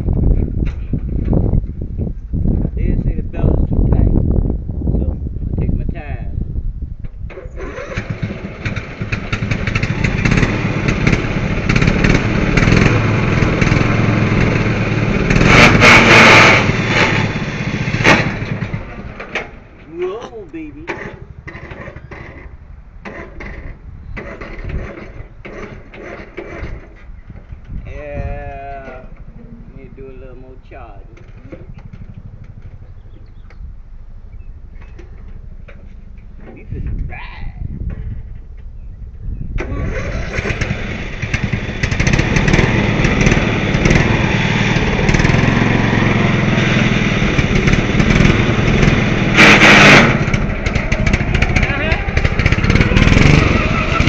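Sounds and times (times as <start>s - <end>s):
lawnmower engine running unevenly: 7.3s - 27.6s, 30.6s - 33.4s, 39.7s - 54.0s
loud rush of noise: 39.7s - 54.0s.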